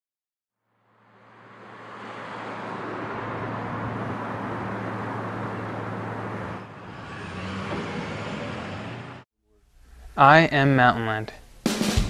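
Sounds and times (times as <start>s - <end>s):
road noise: 0.6s - 9.3s
vehicle engine hum: 0.7s - 9.3s.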